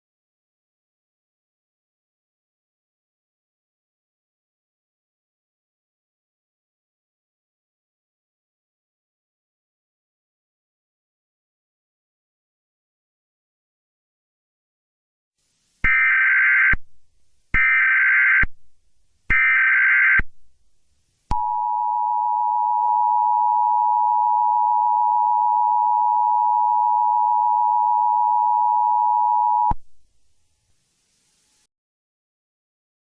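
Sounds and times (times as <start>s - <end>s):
two-tone attention signal: 21.3s - 29.8s.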